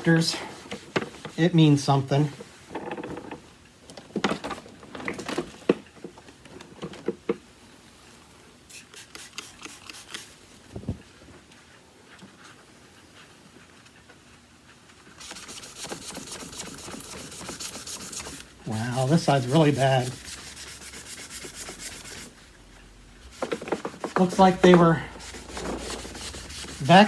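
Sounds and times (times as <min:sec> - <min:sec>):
scrubbing plastic housing: 0:23.2 - 0:27.0.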